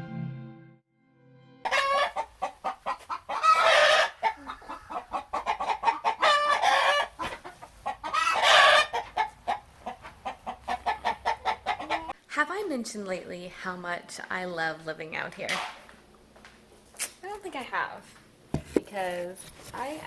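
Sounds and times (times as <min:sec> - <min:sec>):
chickens clucking: 0:01.7 - 0:12.2.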